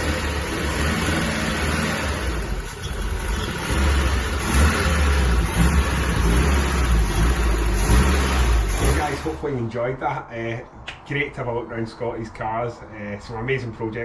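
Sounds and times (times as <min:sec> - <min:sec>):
car engine running: 0:00.0 - 0:09.4.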